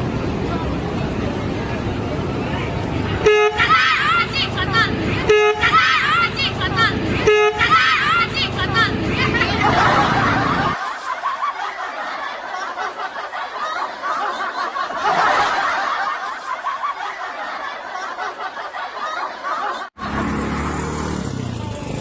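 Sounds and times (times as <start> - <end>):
snickering and chuckling: 9.2 - 20.4.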